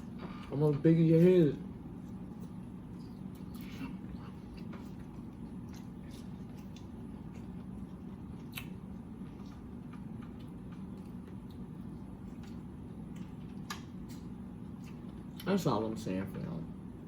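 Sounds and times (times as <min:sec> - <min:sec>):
steady low hum: 0:00.0 - 0:17.0
person chewing food: 0:01.9 - 0:15.5.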